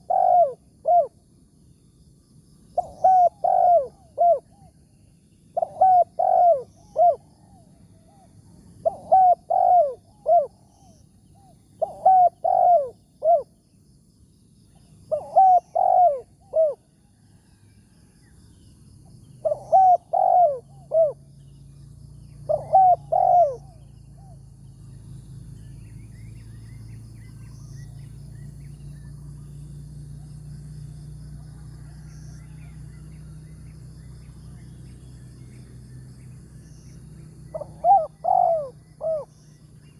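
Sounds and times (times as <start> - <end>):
dove cooing: 0.0 - 1.2, 2.8 - 4.7, 5.5 - 13.5, 15.1 - 16.9, 19.4 - 21.3, 22.4 - 24.4, 37.5 - 39.4.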